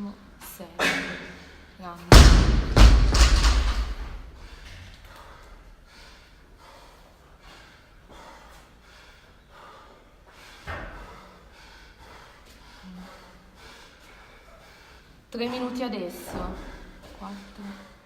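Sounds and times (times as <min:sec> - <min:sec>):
barbell crashing on floor: 0:02.1 - 0:04.6
fast heavy breathing: 0:02.6 - 0:18.0.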